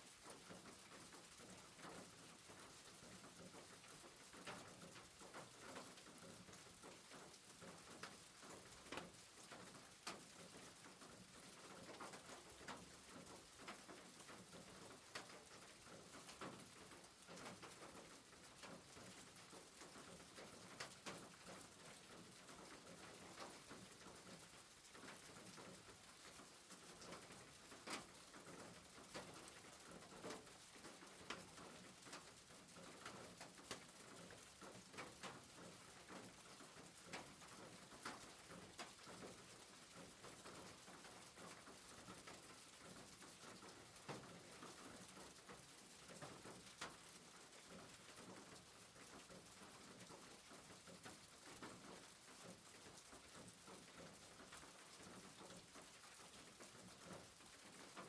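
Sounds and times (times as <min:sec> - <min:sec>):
rain hissing on a roof: 0:00.0 - 0:58.0
raindrops ticking: 0:00.2 - 0:58.0.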